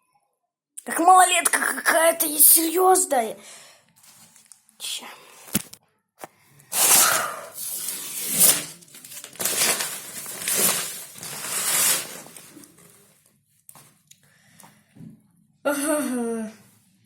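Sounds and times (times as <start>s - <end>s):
wallpaper ripping off a wall: 6.7s - 13.1s.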